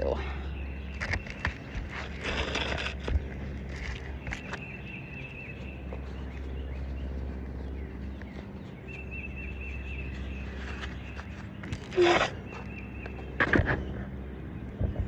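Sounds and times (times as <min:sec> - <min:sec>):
bird chirping: 0:03.9 - 0:14.9.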